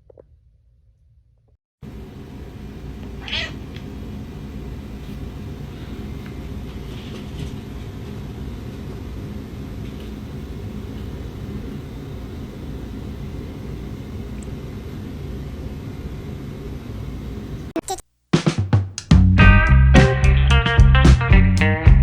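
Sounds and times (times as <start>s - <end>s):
steady low rumbling: 19.1s - 22.0s.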